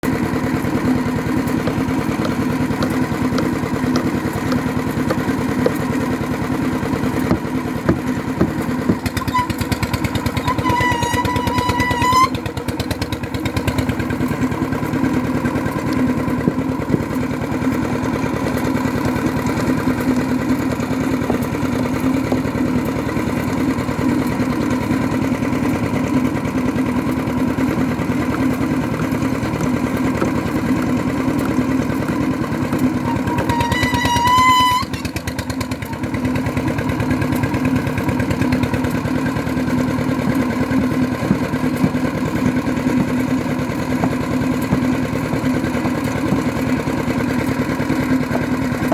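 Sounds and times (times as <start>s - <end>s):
drilling machinery engine: 0.0s - 48.9s
high whistle-like tone: 33.0s - 35.0s.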